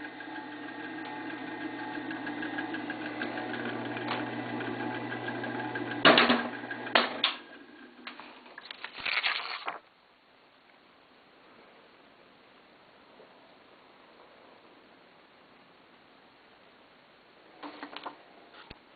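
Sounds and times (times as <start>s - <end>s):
duplicator machine humming and clicking: 0.0s - 8.2s.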